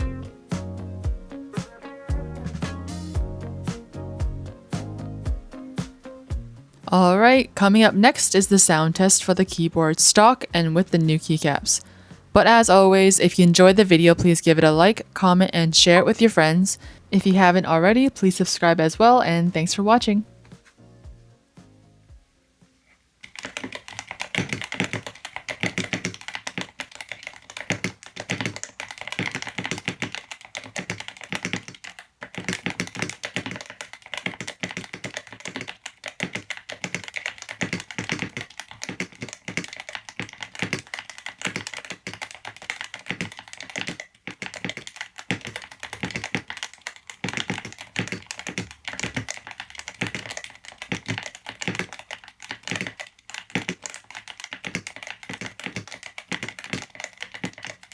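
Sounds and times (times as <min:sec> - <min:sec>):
mechanical keyboard clacks: 0:00.0 - 0:11.8, 0:23.2 - 0:57.9.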